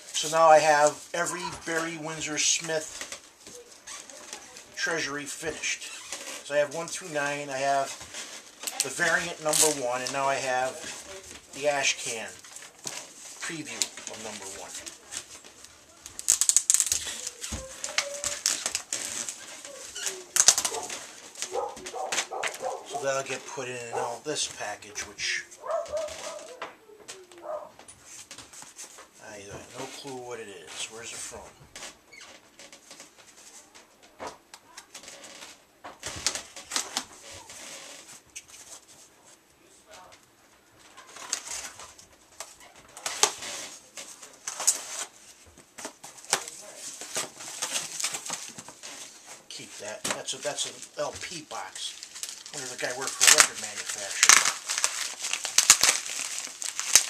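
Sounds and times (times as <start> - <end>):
packaging rustling and crinkling: 0.0 - 57.0
cardboard snapping and tearing: 8.1 - 11.7, 16.0 - 23.0, 45.8 - 57.0.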